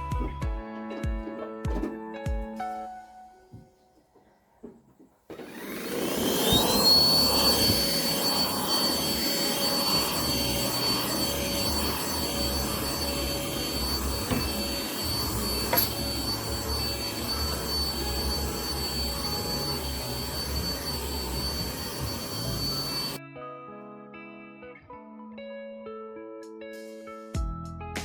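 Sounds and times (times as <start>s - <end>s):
vacuum cleaner whining: 1.0s - 23.2s.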